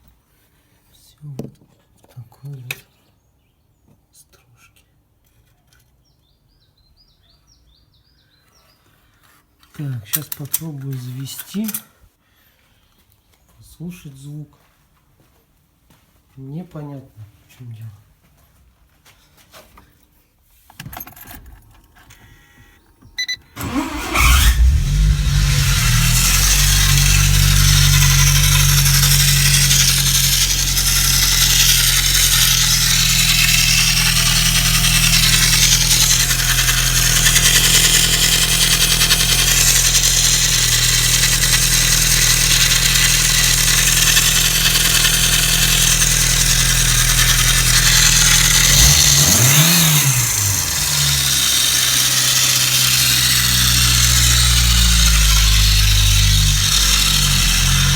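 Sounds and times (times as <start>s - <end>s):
engine running with a knock: 23.6s - 57.9s.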